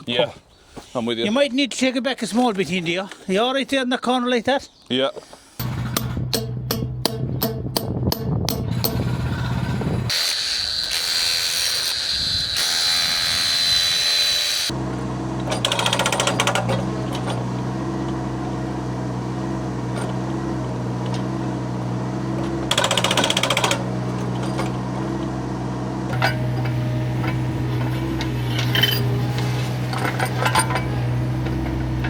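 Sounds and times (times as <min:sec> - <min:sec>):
jackhammer hammering: 0:05.6 - 0:10.2, 0:14.7 - 0:32.0
steady low hum: 0:14.7 - 0:32.0.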